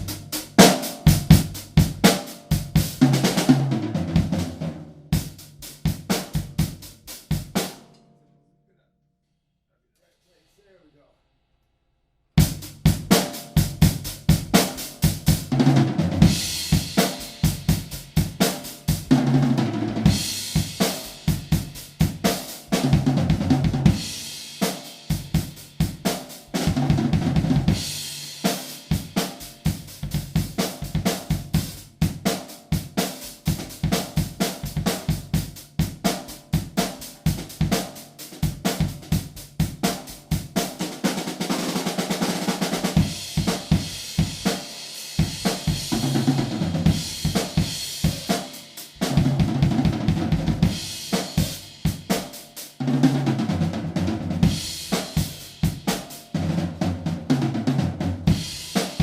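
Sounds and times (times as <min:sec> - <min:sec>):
drum kit beat: 0:00.0 - 0:08.1, 0:12.4 - 0:59.0.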